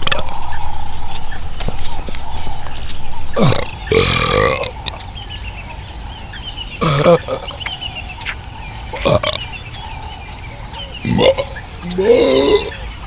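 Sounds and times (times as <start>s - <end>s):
lion belching: 0.0s - 0.2s, 3.4s - 5.0s, 6.8s - 7.9s, 9.0s - 9.4s, 11.0s - 12.8s.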